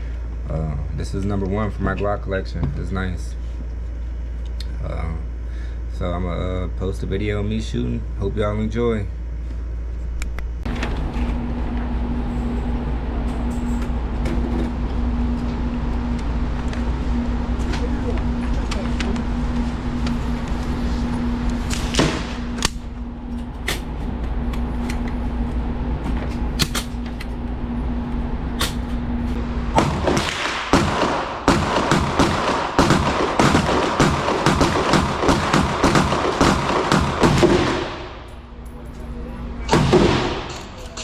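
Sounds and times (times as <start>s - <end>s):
low hum: 0.0s - 41.0s
pistol shots: 29.8s - 38.3s, 39.6s - 40.8s.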